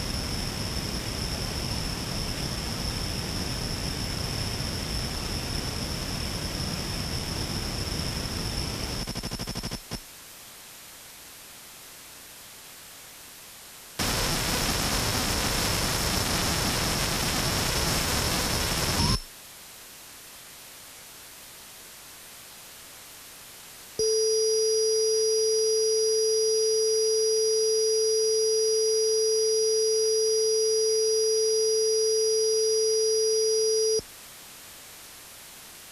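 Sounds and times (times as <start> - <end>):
loud static: 0.0 - 10.1, 14.0 - 19.4, 24.0 - 34.1
faint static hiss: 0.0 - 35.9.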